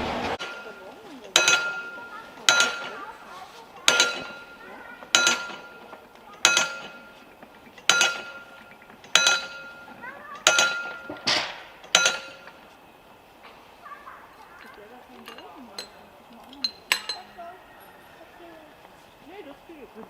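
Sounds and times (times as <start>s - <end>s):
metal struck ringing: 0.3s - 12.7s.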